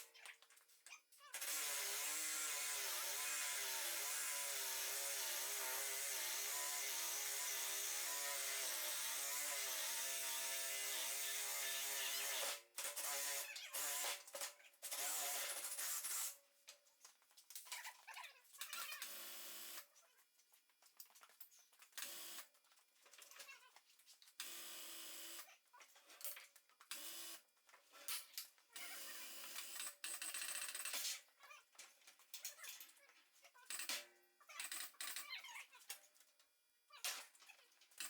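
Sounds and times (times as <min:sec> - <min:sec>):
small electric motor running: 0:01.4 - 0:14.2, 0:14.8 - 0:16.4.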